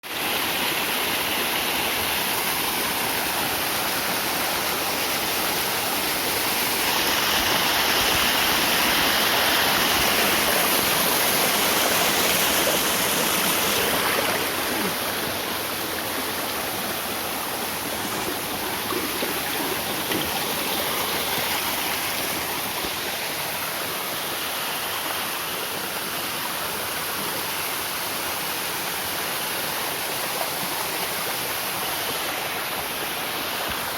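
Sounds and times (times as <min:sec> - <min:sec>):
waterfall rushing: 0:00.0 - 0:33.9.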